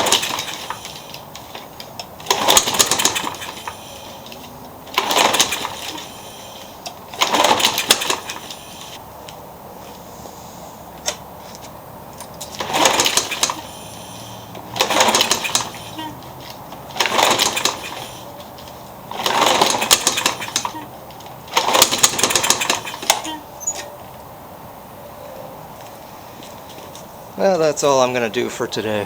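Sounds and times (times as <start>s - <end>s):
recoil cord pull-start rattling: 0.0s - 9.0s, 12.2s - 23.4s
blade hitting mower deck: 16.9s - 18.2s, 19.1s - 20.8s.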